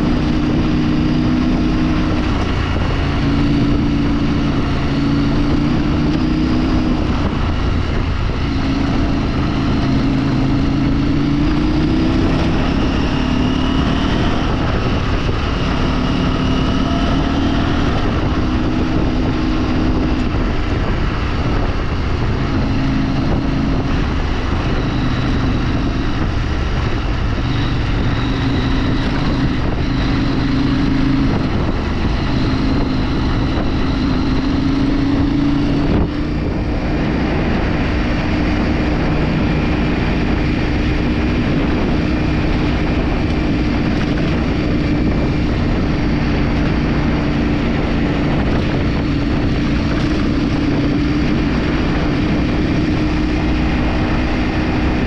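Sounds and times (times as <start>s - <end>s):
vehicle engine running: 0.0s - 55.0s
wind on microphone: 0.0s - 55.0s.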